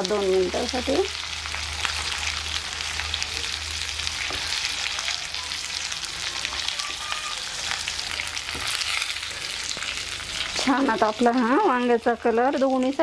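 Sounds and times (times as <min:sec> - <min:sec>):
vegetables sizzling in hot oil: 0:00.0 - 0:13.0.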